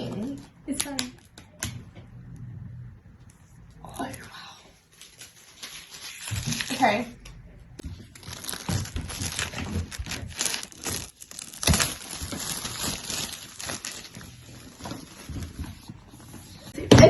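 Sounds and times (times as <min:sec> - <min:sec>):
wrapping ripping: 0:04.9 - 0:07.0, 0:08.0 - 0:16.8
wrapping crinkling: 0:04.9 - 0:07.2, 0:07.8 - 0:16.9.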